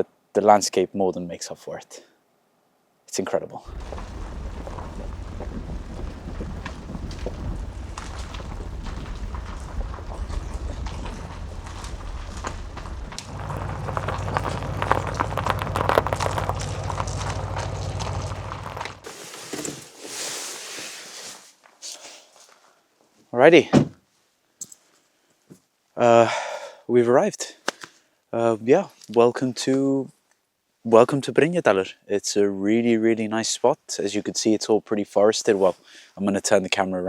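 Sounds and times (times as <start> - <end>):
car road and engine rumble: 3.7 - 19.1
tyres crackling: 3.7 - 19.4.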